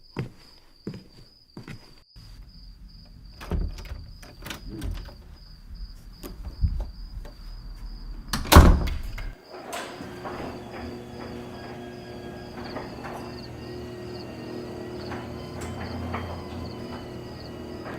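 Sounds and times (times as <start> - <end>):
knocks and clatters: 8.4 - 17.9.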